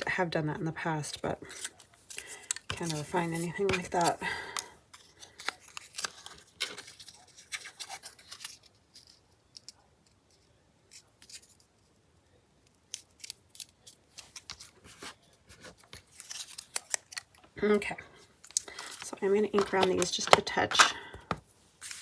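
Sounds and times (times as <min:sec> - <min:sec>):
scissors cutting paper: 0:18.5 - 0:20.9.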